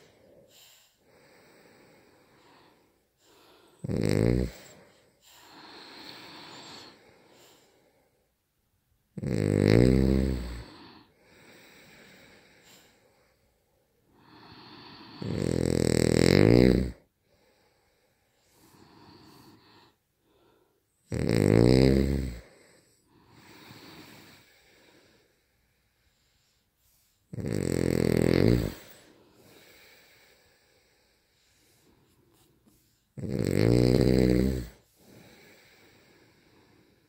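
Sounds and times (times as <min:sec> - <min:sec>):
quiet breaths: 0:00.0 - 0:37.0
loud snoring: 0:03.4 - 0:07.1, 0:09.2 - 0:12.8, 0:14.2 - 0:17.1, 0:21.0 - 0:25.2, 0:27.3 - 0:31.1, 0:33.2 - 0:37.0.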